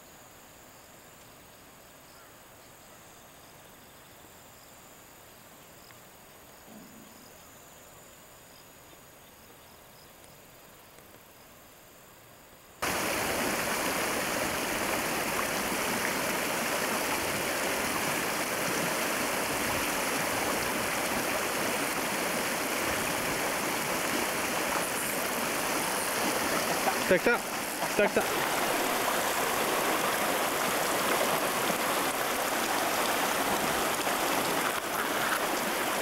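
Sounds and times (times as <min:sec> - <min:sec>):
stream water rushing: 0:12.8 - 0:36.0.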